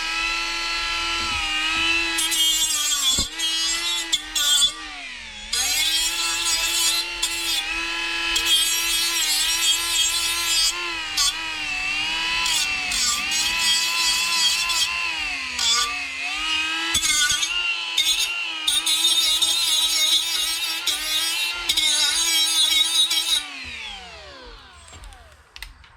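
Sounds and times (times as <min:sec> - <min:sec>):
power grinder whining: 0:00.0 - 0:25.9.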